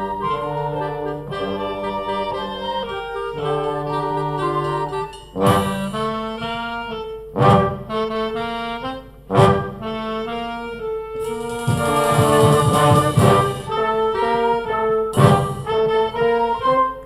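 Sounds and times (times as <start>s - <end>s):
brass band playing: 0.0s - 17.0s
cymbal crash: 5.1s - 6.2s, 11.2s - 14.2s
drum hit: 5.4s - 6.2s, 11.2s - 14.1s, 15.2s - 15.9s.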